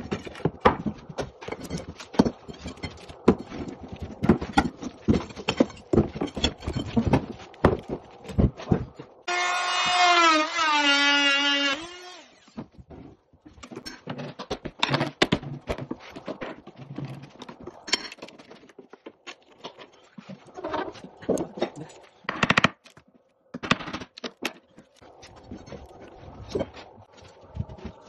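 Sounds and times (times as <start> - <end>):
wooden floorboards knocking and scraping: 0.0 - 9.2, 12.6 - 19.7.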